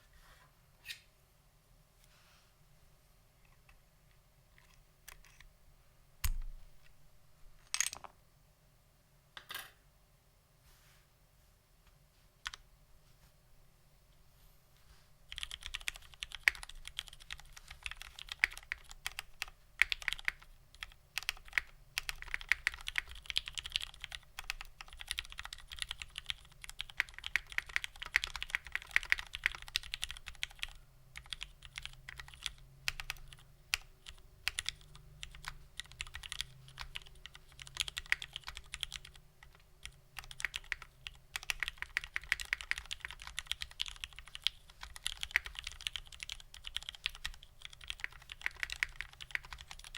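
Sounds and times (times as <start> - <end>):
fast typing on mechanical keyboard: 15.3 - 49.9.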